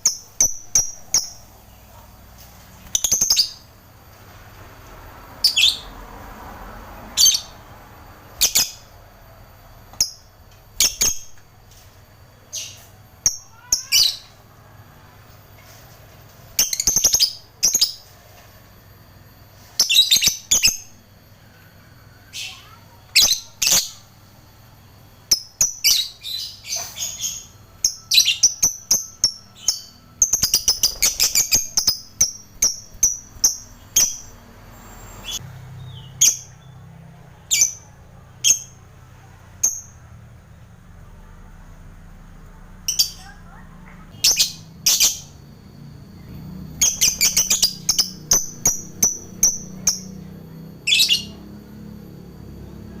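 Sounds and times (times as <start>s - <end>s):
lovebird chirping: 0.0s - 3.8s, 5.4s - 6.0s, 7.0s - 7.6s, 8.2s - 9.1s, 9.9s - 11.7s, 12.4s - 14.6s, 16.5s - 18.2s, 19.6s - 21.0s, 25.2s - 38.9s, 42.8s - 53.0s.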